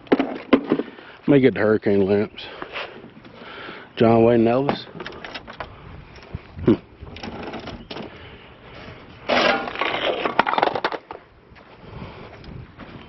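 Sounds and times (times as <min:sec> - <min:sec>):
items rustling and clattering: 0:00.0 - 0:01.1, 0:04.6 - 0:06.4, 0:07.1 - 0:08.2, 0:09.2 - 0:11.3.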